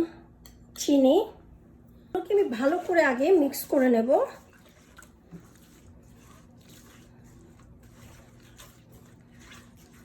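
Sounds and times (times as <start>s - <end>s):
sauce squishing in bowl: 4.3s - 10.0s.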